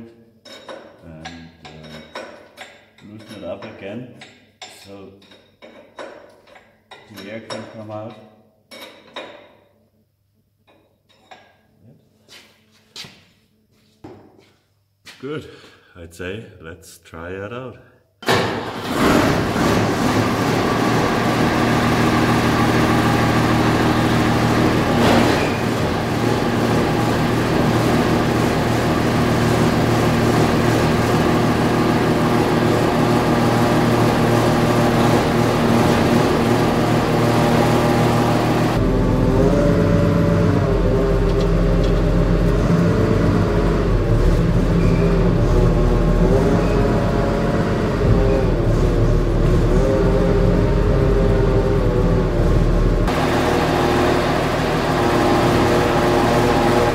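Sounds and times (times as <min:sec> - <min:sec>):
diesel engine running: 0:18.3 - 0:56.9.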